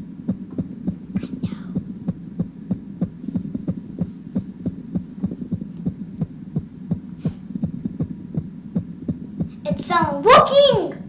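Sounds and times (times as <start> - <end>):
irregular heartbeat thumps: 0.0 - 10.3
steady low hum: 0.0 - 11.0.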